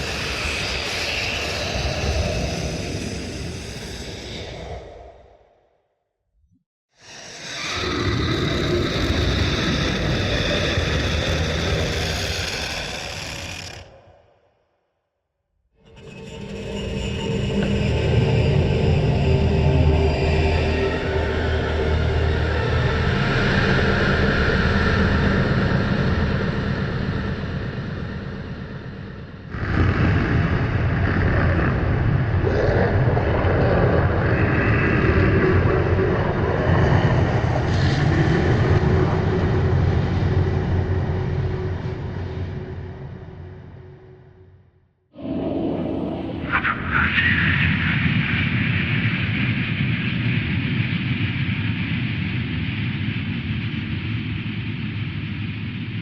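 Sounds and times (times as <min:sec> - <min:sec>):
distorted industrial rumble: 0:16.0 - 0:44.6.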